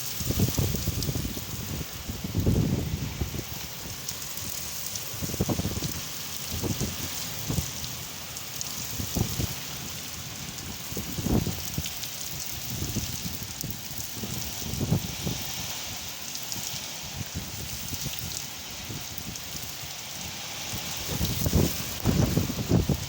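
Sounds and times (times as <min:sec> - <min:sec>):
wind buffeting microphone: 0:00.0 - 0:07.8, 0:08.7 - 0:16.0, 0:20.6 - 0:23.0
heavy rain pouring: 0:00.0 - 0:23.0.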